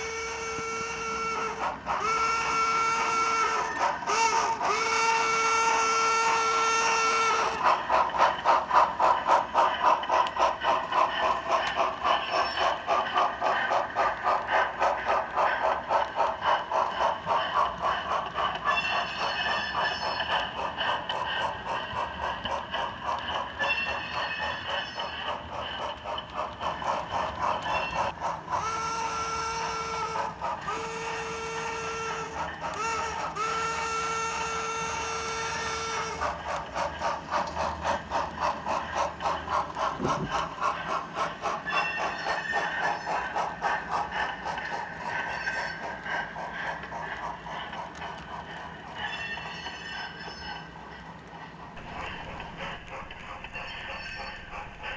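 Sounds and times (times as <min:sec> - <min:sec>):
steam locomotive whistle: 0:00.0 - 0:07.8, 0:27.6 - 0:36.4
steam locomotive chuffing: 0:00.0 - 0:54.9.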